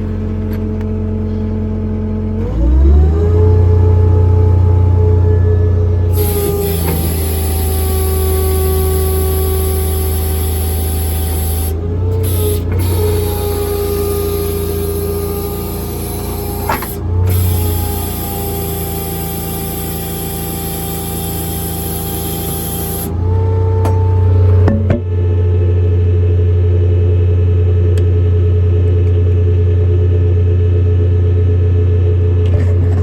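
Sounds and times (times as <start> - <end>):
truck engine running: 0.0 - 33.0
hydraulic hiss: 6.1 - 23.1.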